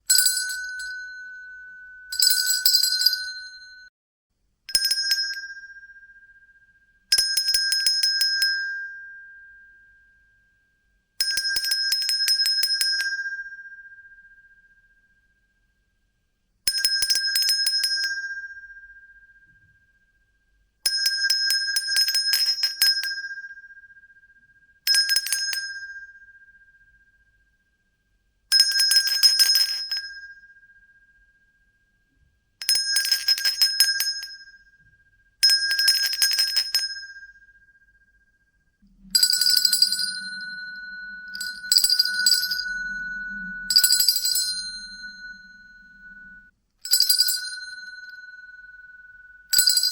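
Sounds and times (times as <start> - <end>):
hand bell ringing: 0.1 - 3.9, 38.9 - 48.8, 49.5 - 49.9
lower-pitched bell ringing: 0.1 - 3.9, 38.6 - 49.9
faint low hum: 38.7 - 46.5.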